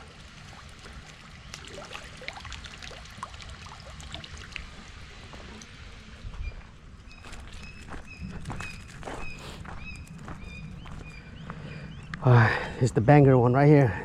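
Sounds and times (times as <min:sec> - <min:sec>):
small water plops: 0:00.0 - 0:04.9
water dripping and trickling: 0:00.0 - 0:05.8.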